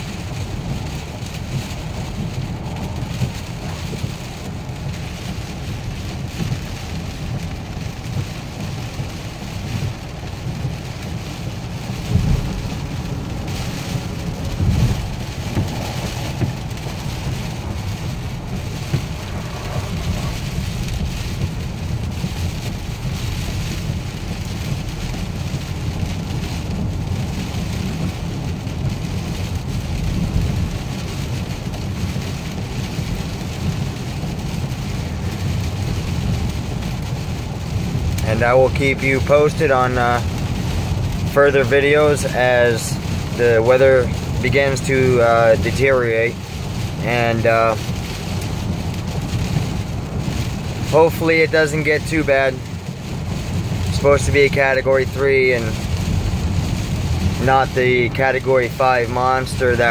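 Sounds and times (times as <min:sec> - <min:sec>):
heavy rain drumming on a car: 0:00.0 - 0:59.9
wind and road noise rumble: 0:00.0 - 0:59.9.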